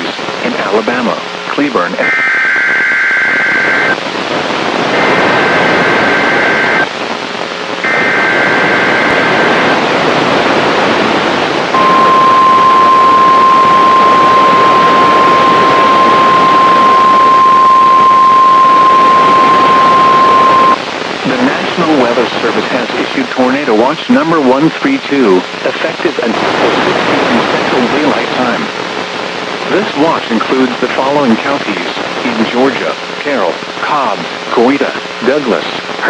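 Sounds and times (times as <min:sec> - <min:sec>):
radio static hiss: 0:00.0 - 0:36.0
buzzy digital data warble: 0:02.0 - 0:04.0, 0:05.0 - 0:06.9, 0:11.7 - 0:21.6.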